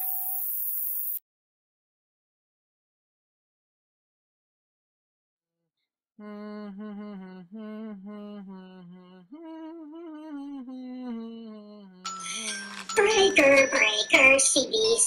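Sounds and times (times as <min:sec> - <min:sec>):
person singing wordless tune: 0:06.2 - 0:15.0.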